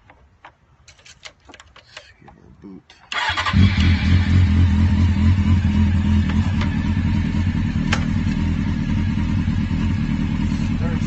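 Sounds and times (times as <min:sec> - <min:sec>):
motorcycle engine idling: 0:03.2 - 0:11.0.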